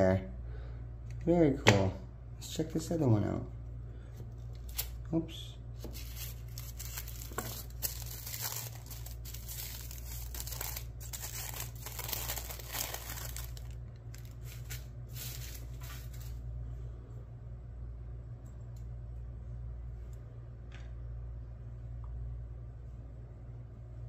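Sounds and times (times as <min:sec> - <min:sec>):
steady low hum: 0:00.0 - 0:24.0
packaging crinkling and tearing: 0:05.8 - 0:16.4.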